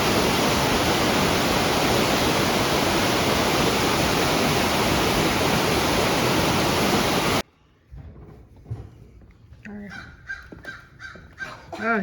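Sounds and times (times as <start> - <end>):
rushing mountain stream: 0.0 - 7.4.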